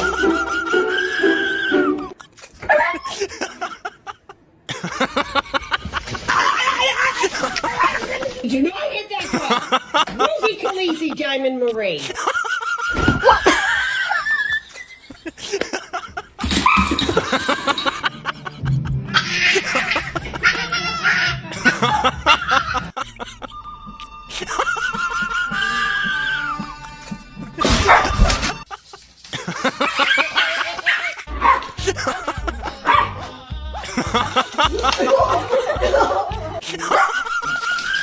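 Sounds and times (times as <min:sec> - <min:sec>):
background music: 0:00.0 - 0:02.2, 0:17.1 - 0:28.7, 0:31.3 - 0:36.7
people laughing: 0:00.0 - 0:11.3, 0:12.0 - 0:38.0
dogs barking: 0:19.1 - 0:22.9, 0:27.6 - 0:28.6, 0:29.8 - 0:31.9, 0:32.7 - 0:33.4, 0:35.0 - 0:37.7.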